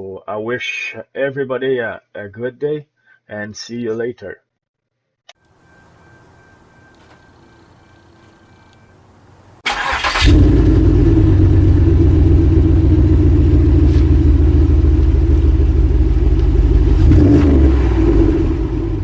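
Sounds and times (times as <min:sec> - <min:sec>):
engine cranking: 0:09.6 - 0:10.8
engine deep idle: 0:09.7 - 0:17.2.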